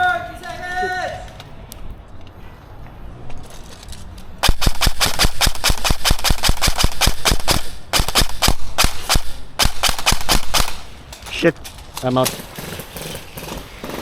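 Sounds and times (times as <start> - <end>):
airsoft gun firing bursts: 4.4 - 11.0, 12.2 - 14.0.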